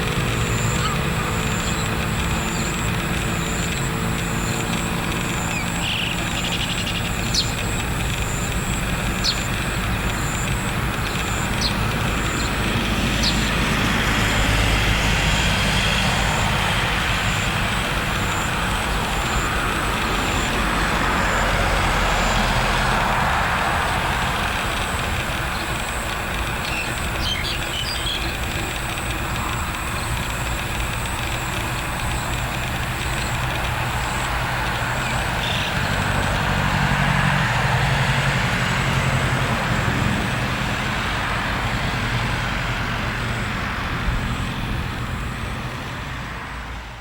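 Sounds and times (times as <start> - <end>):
high insect trill: 0.0 - 45.6
passing road traffic: 0.0 - 47.0
vehicle engine passing: 0.0 - 47.0
bird chirps: 0.3 - 13.6, 24.7 - 36.2.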